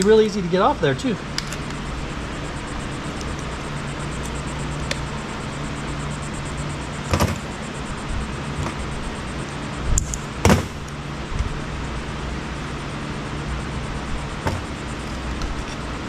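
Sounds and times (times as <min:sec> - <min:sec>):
low hum: 0:00.0 - 0:16.0
sharp knocks: 0:07.1 - 0:07.5, 0:10.4 - 0:10.9, 0:14.4 - 0:14.8.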